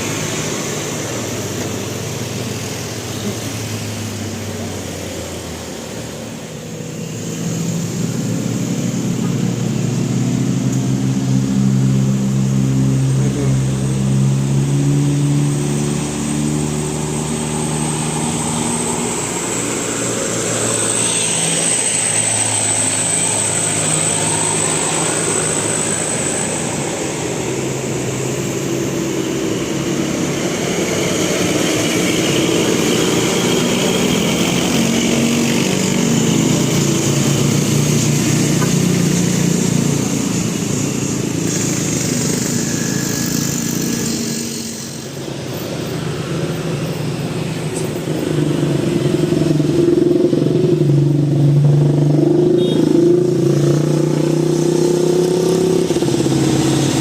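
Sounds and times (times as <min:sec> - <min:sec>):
bus engine: 0:00.0 - 0:57.0
traffic noise: 0:00.0 - 0:57.0
bus horn playing a tune: 0:52.6 - 0:52.9.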